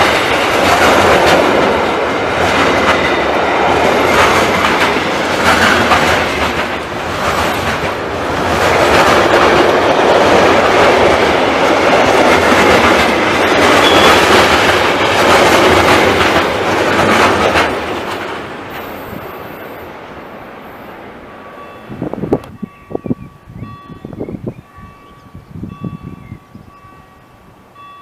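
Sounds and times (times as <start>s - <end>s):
train wheels clattering on rails: 0.0s - 19.9s.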